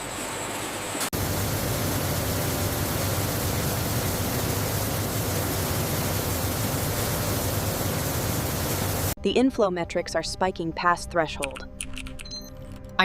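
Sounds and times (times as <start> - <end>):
machine humming and hissing: 0.0 - 9.2.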